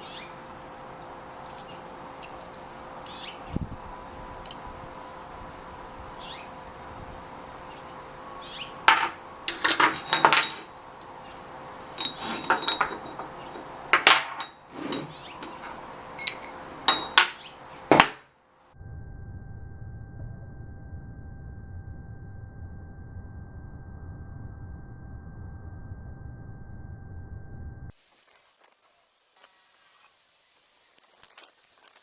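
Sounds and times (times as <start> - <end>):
faint shop hum: 0.0 - 24.3
steel parts clanking: 8.8 - 18.2.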